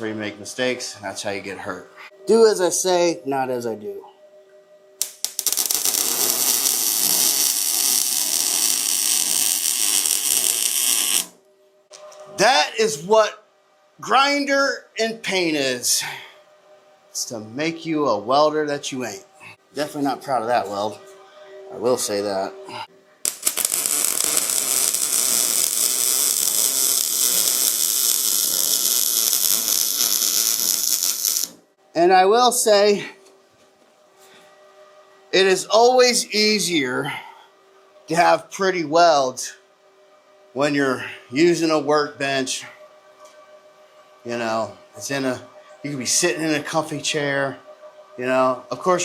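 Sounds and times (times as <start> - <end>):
welding arc crackling: 5.0 - 11.4, 23.2 - 31.6.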